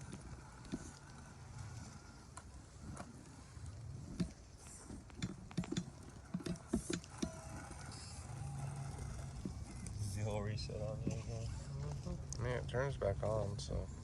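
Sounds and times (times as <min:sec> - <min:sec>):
low steady hum: 0:00.0 - 0:14.0
plastic and rock clicks: 0:04.1 - 0:07.4.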